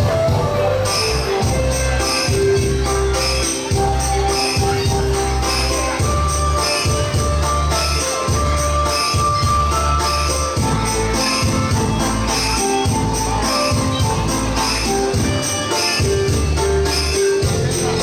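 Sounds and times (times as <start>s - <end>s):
dance music: 0.0s - 18.0s
jingling bells: 0.3s - 18.0s.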